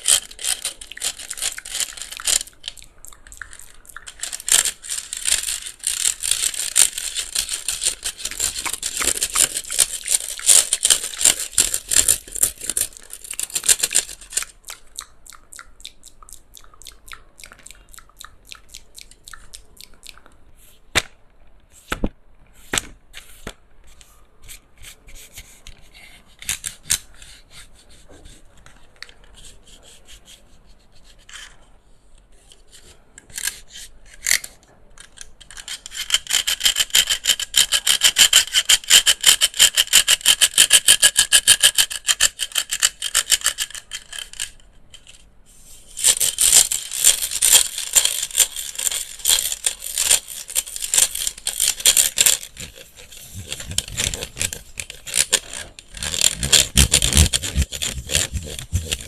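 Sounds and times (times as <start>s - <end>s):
scratching on plastic fan body: 0.0s - 14.6s, 35.4s - 59.0s.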